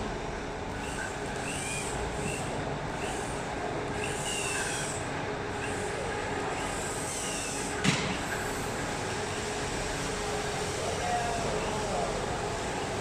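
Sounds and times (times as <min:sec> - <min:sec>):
factory machinery humming: 0:00.0 - 0:13.0.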